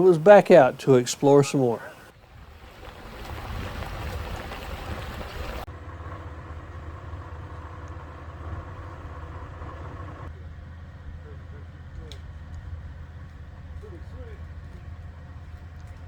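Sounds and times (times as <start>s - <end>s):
wind noise: 1.2s - 5.7s
low engine and road rumble: 1.9s - 16.0s.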